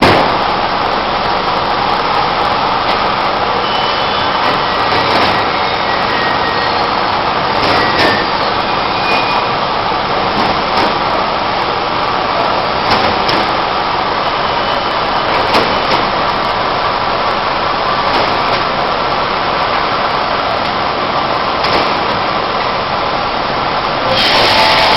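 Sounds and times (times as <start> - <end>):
industrial vacuum cleaner running: 24.0 - 24.9.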